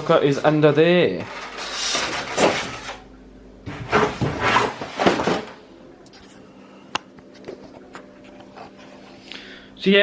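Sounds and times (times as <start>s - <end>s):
cardboard rustling and scraping: 1.2s - 5.6s.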